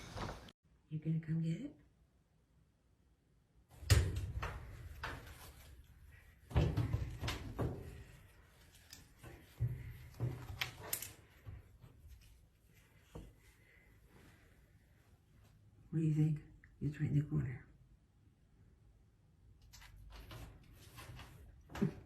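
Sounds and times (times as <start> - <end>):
knocks and thuds: 6.4 - 8.1.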